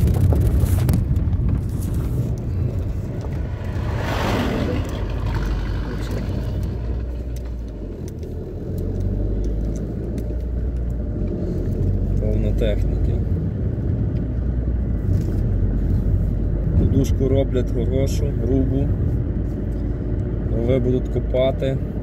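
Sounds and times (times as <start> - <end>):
vehicle engine rumble: 0.0 - 22.0
vehicle passing by: 1.8 - 14.1.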